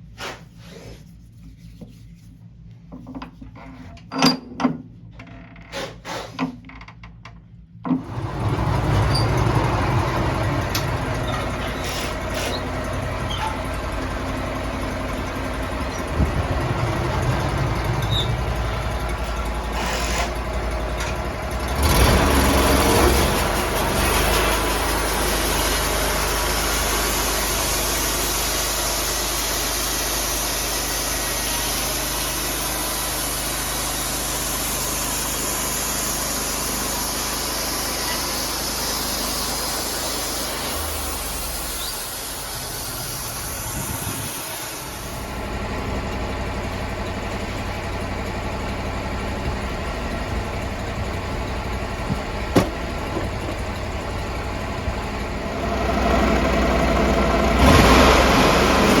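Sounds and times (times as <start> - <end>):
saw blade cutting log: 5.7 - 6.4, 10.7 - 13.6, 17.2 - 21.2, 21.8 - 45.3
sawmill engine running: 7.9 - 59.0.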